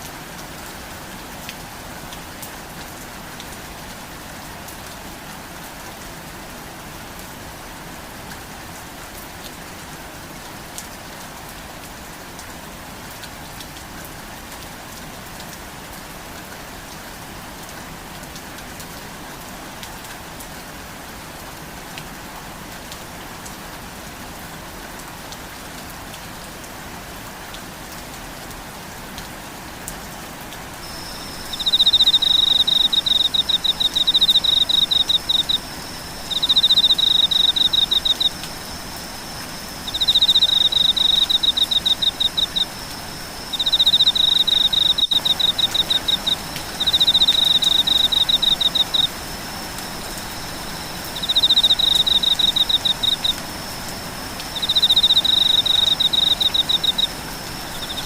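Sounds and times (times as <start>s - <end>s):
steady rain falling: 0.0s - 58.0s
steady high whine: 30.8s - 58.0s.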